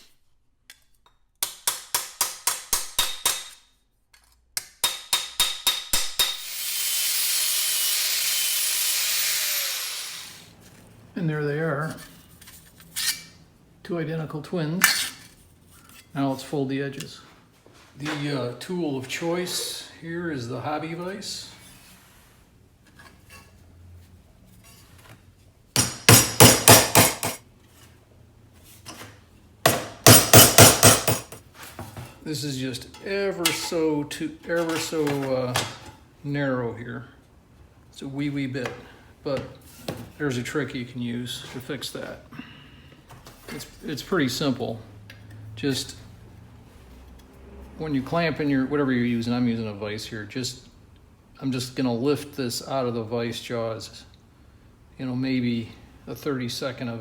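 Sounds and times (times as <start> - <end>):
hammer striking sheet metal: 1.4 - 3.6, 4.8 - 6.5, 25.8 - 27.4, 29.7 - 31.4
power tool running: 6.3 - 10.5
hammer blows on sheet steel: 25.8 - 27.4, 29.7 - 31.4.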